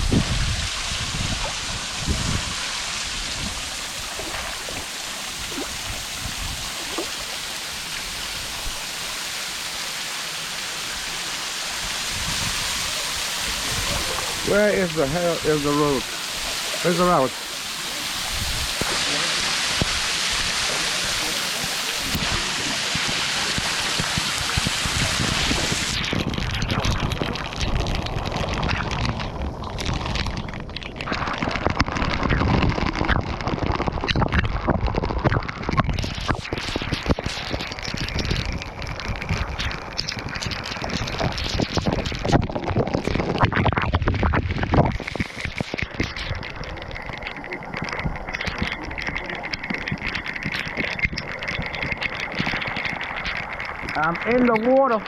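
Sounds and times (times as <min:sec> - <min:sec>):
wind buffeting microphone: 0:00.0 - 0:07.1, 0:12.0 - 0:14.8
waterfall rushing: 0:00.0 - 0:33.6, 0:35.5 - 0:55.0.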